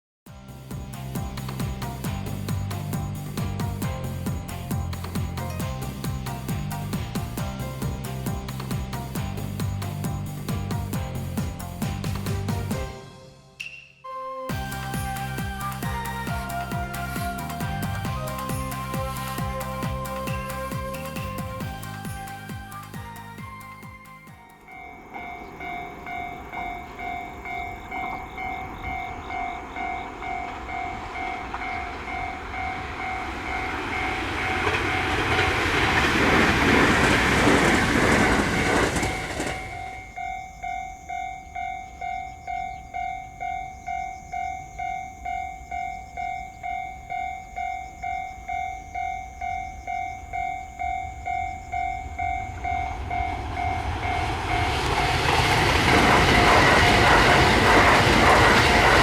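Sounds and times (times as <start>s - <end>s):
train passing: 0.3s - 13.7s, 14.5s - 59.0s
level crossing alarm clanging: 24.4s - 59.0s.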